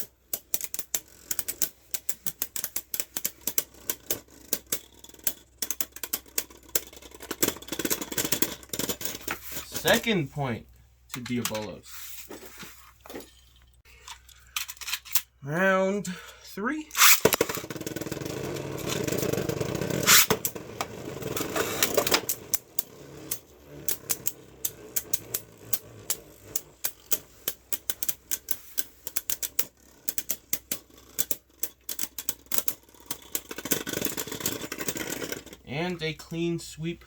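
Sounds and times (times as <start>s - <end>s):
spinning tops clicking and rattling: 0.0s - 10.1s, 17.0s - 35.6s
spinning tops grinding whirr: 0.0s - 11.0s, 16.9s - 35.7s.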